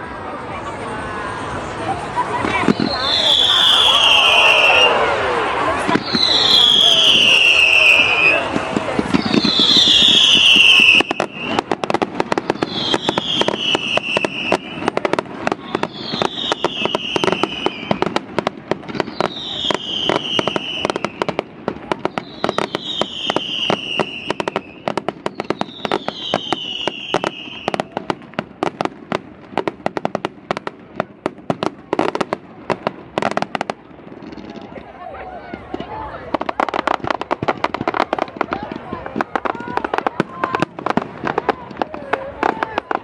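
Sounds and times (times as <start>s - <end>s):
fireworks crackling: 0.0s - 43.0s
loud firework cracks: 2.2s - 34.9s, 35.5s - 43.0s
high falling firework whistle: 2.6s - 11.7s, 12.5s - 18.2s, 18.9s - 28.2s.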